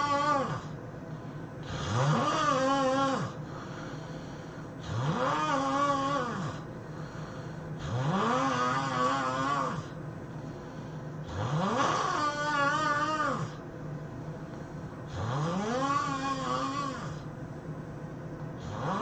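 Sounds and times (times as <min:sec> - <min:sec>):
person snoring: 0:00.0 - 0:00.8, 0:01.6 - 0:10.0, 0:11.2 - 0:13.6, 0:15.1 - 0:17.3, 0:18.6 - 0:19.0
quiet breathing: 0:00.0 - 0:02.0, 0:03.2 - 0:05.1, 0:05.9 - 0:08.0, 0:08.9 - 0:11.5, 0:13.4 - 0:17.5.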